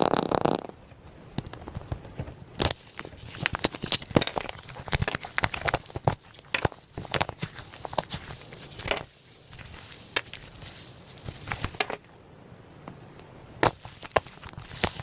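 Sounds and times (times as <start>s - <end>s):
slime clicking and crackling: 2.6s - 11.9s.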